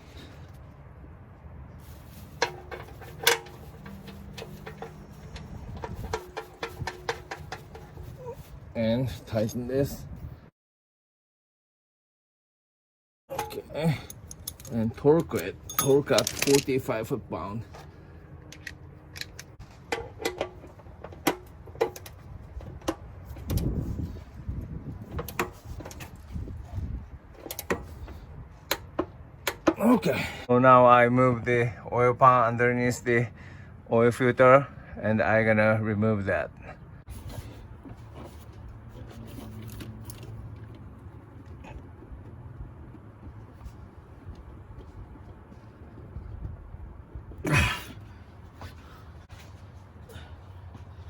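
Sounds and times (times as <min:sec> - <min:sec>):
tools clicking and scraping: 0:02.0 - 0:08.4, 0:13.3 - 0:17.0, 0:17.7 - 0:23.8, 0:27.4 - 0:29.8, 0:37.1 - 0:45.0.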